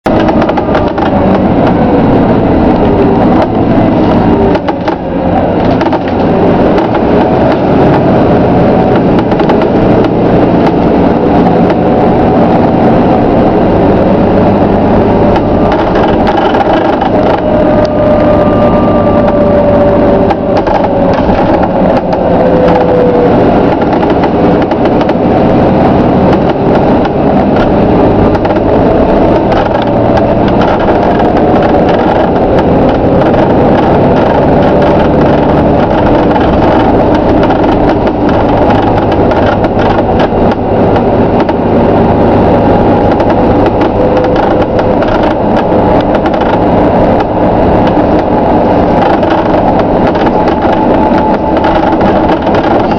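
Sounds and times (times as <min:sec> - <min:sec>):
bus body creaking: 0:00.0 - 0:52.9
bus engine and road noise: 0:00.0 - 0:52.9
long falling tone: 0:17.0 - 0:23.8.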